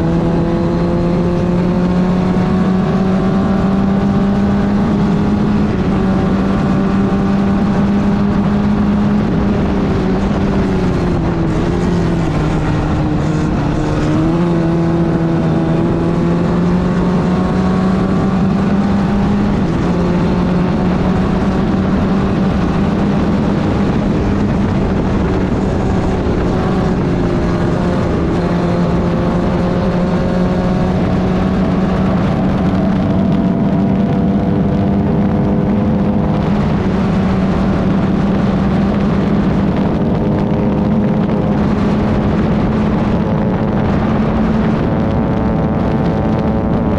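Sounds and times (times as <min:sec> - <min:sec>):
race car engine at high revs: 0:00.0 - 0:46.9.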